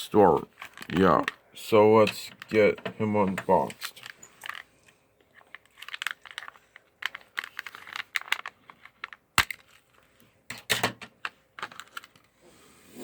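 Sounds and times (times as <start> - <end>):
plastic and cardboard crackling: 0.4 - 1.4, 2.0 - 12.4.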